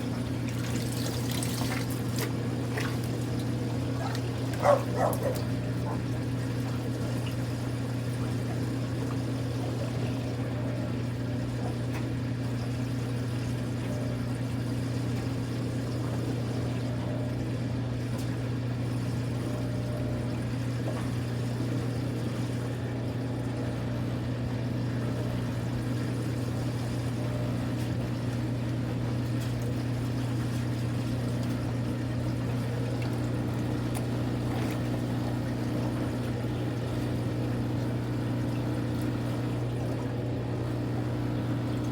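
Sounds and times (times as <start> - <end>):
water moving in tub: 0.0 - 12.4, 27.6 - 41.9
washing machine motor hum: 0.0 - 41.9.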